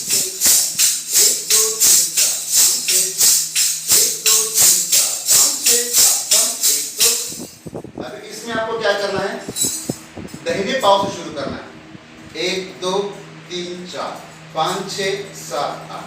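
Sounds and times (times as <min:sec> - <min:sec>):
jingles clashing rhythmically: 0:00.0 - 0:07.6.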